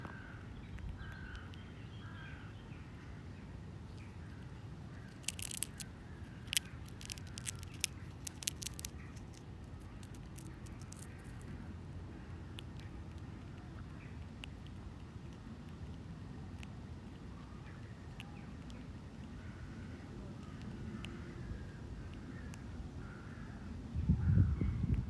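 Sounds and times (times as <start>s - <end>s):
sharp irregular clicks: 5.0s - 11.5s.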